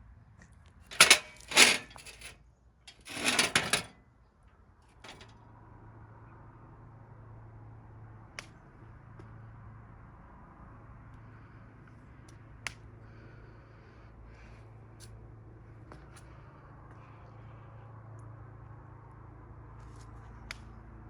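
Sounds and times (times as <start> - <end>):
mechanical clacks and rattle: 0.9 - 2.3, 2.9 - 3.9, 5.1 - 5.3.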